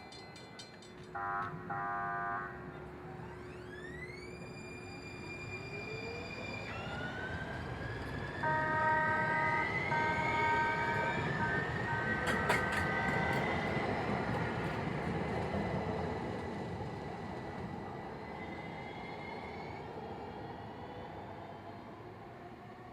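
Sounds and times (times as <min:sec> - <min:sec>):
light-rail train motors whining: 0:00.0 - 0:22.9
train horn blasts: 0:01.1 - 0:02.8, 0:08.4 - 0:13.5.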